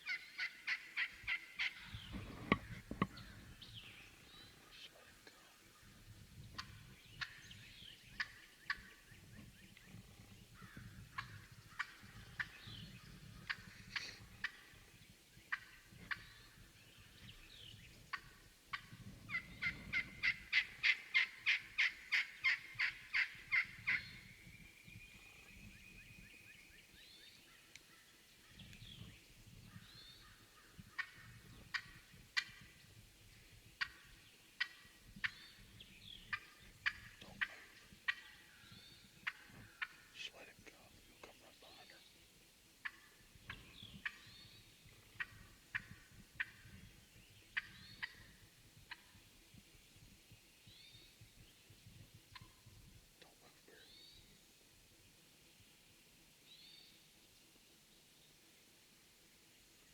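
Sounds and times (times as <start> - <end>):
turkey clucking and yelping: 0.1 - 3.4, 10.7 - 12.6, 18.1 - 24.1, 31.0 - 32.7.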